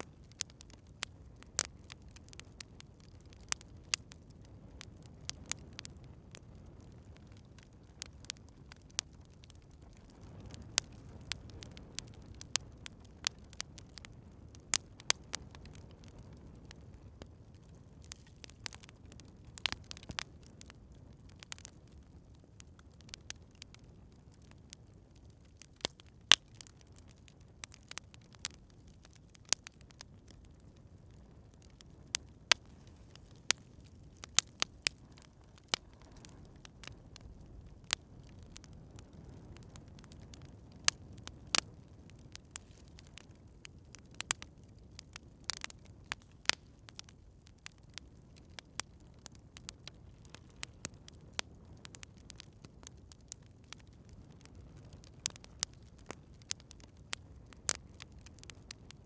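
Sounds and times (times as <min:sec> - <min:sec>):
campfire crackling and popping: 0:00.0 - 0:59.0
low rumble of burning fire: 0:00.0 - 0:59.0.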